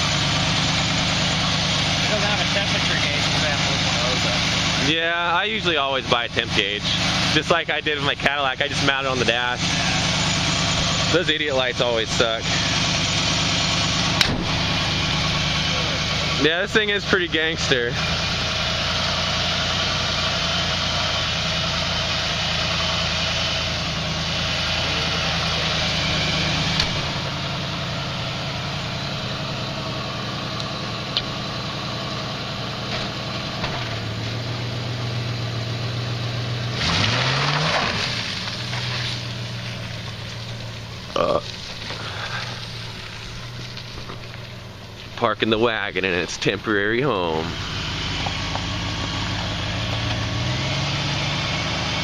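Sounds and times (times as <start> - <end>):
car engine idling: 0.0 - 52.0.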